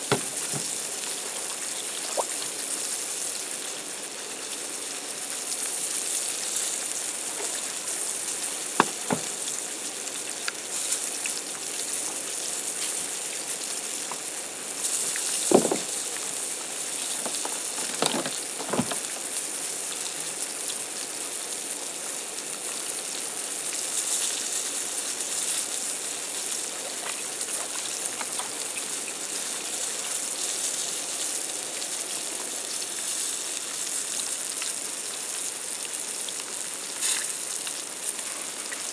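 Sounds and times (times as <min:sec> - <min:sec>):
sharp knocks: 0:00.1 - 0:00.8, 0:08.8 - 0:09.5, 0:15.5 - 0:16.1, 0:17.2 - 0:19.2
fish frying in a skillet: 0:01.6 - 0:07.5.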